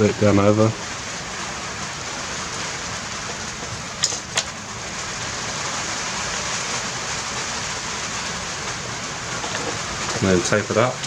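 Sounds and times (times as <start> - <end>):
rain hissing: 0.0 - 11.0
sharp clicks: 3.6 - 4.6.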